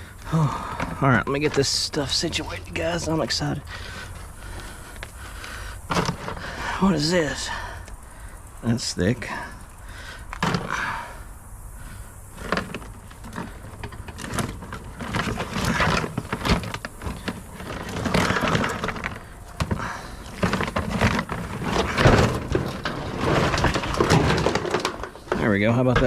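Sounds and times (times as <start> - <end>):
scrap metal clattering: 5.9 - 7.6, 12.3 - 26.0.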